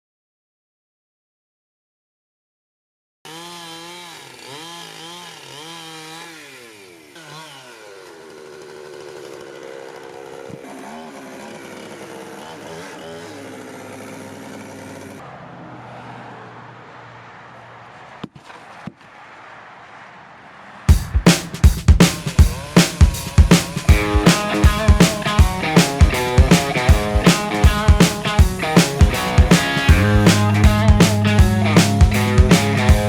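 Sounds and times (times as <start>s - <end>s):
chainsaw engine revving: 3.3s - 15.4s, 21.4s - 33.0s.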